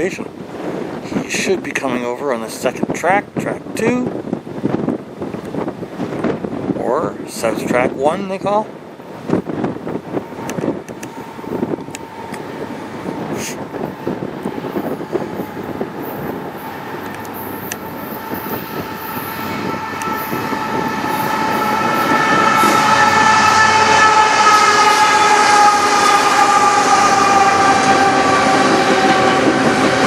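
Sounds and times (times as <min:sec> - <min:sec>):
freight train rumble: 0:00.0 - 0:30.0
steady pitched tone: 0:09.9 - 0:29.7.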